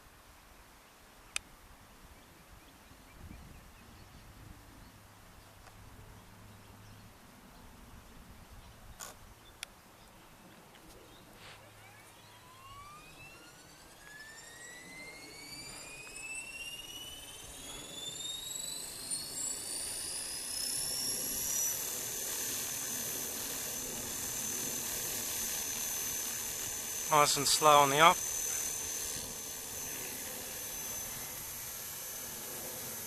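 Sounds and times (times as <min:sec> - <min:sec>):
electric motor whine spooling up: 0:11.2 - 0:33.0.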